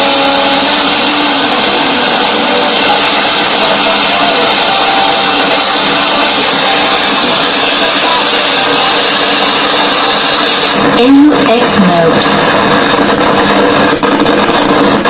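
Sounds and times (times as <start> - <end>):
speaker harsh distorted noise: 0.0 - 15.0.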